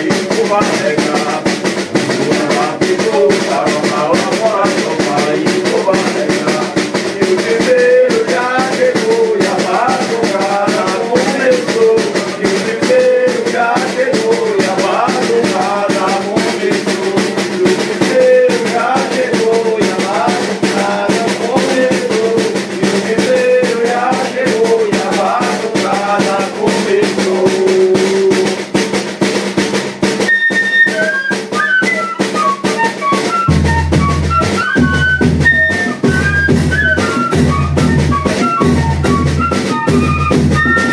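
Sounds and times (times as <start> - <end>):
snare drum: 0.0 - 40.9
fife band melody: 23.9 - 40.9.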